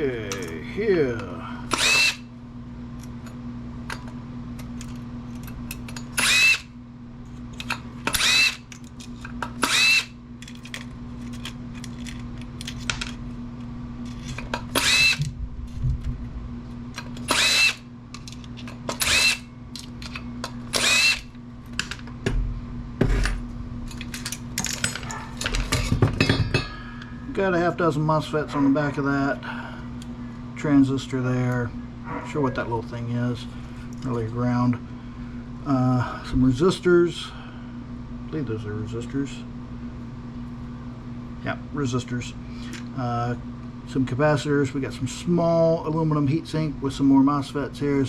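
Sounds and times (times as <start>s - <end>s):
steady low hum: 0.0s - 48.0s
power drill whining bursts: 1.7s - 2.3s, 6.2s - 6.7s, 8.1s - 8.6s, 9.6s - 10.2s, 14.7s - 15.3s, 17.2s - 17.9s, 19.0s - 19.5s, 20.7s - 21.3s.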